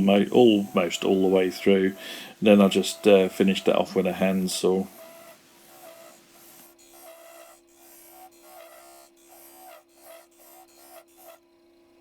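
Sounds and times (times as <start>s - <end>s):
steady low hum: 0.0s - 8.6s
handsaw cutting wood: 0.0s - 11.5s.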